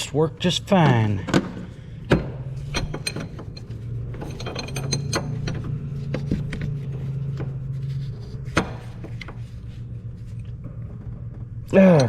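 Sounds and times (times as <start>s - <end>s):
steady low hum: 0.0s - 12.0s
metal tools clinking: 2.6s - 5.8s, 11.7s - 12.0s.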